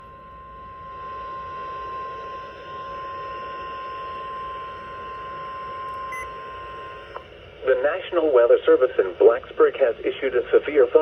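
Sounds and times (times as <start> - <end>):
steady alarm tone: 0.0 - 7.2
radio reception hiss: 7.6 - 11.0.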